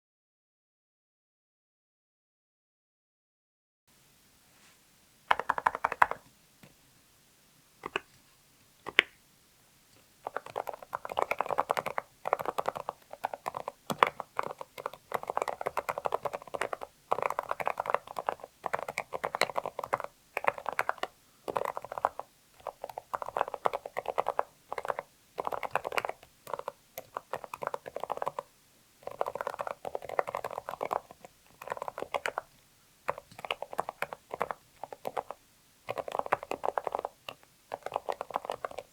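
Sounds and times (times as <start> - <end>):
muted keyboard keystrokes: 5.3 - 6.3, 7.8 - 8.1, 8.8 - 9.1, 10.2 - 32.5, 33.1 - 38.9.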